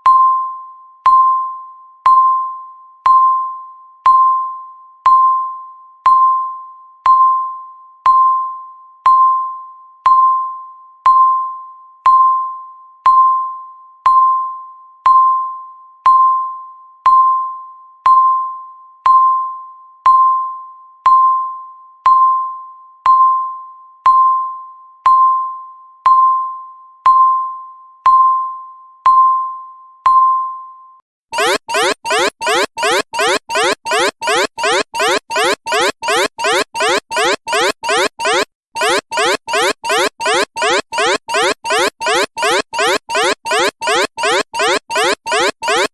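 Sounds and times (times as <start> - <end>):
countdown timer beeping: 31.4 - 45.9.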